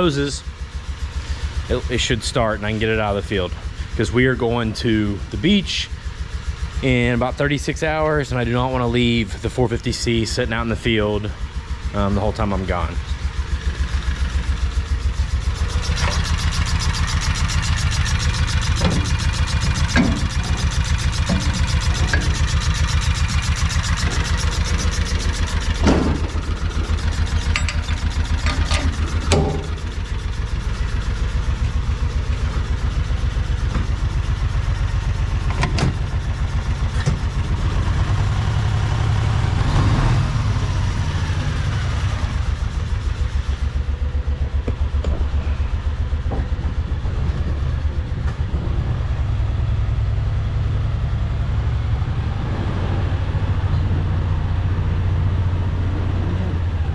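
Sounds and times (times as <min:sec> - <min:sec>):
vehicle engine running: 0:00.0 - 0:56.9
sharp clunks: 0:18.6 - 0:30.0.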